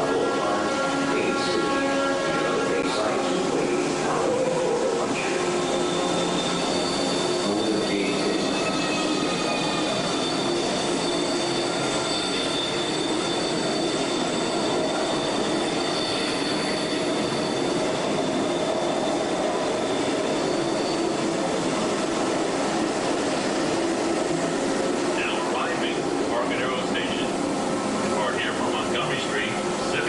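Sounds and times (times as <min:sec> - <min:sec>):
train rumbling on rails: 0:00.0 - 0:30.0
high wheel squeal: 0:03.5 - 0:27.4.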